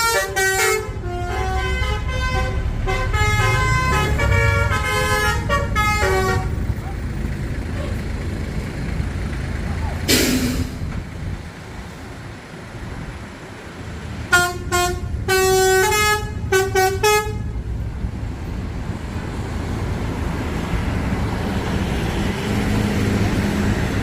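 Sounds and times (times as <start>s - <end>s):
bus multi-tone horn tune: 0.0s - 6.7s, 14.2s - 17.7s
low engine and traffic rumble: 0.0s - 24.0s.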